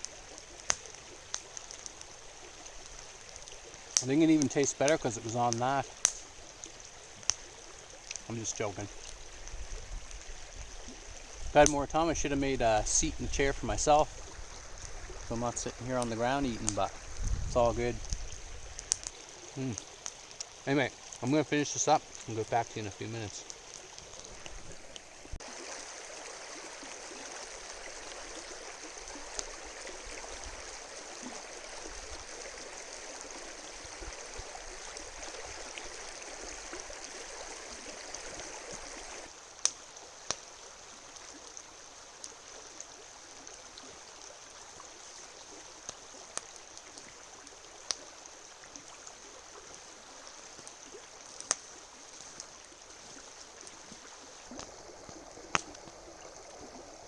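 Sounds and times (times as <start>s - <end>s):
river water rushing: 23.6s - 39.4s.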